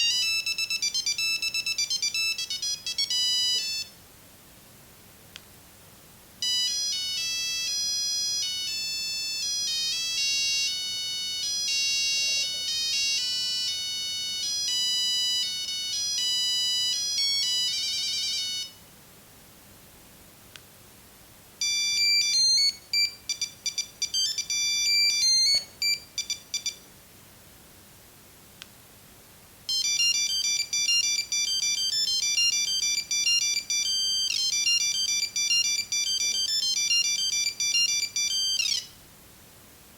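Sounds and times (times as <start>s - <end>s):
beeping phone ringtone melodies: 0.0s - 4.0s, 6.4s - 18.8s, 21.6s - 26.8s, 29.7s - 39.0s.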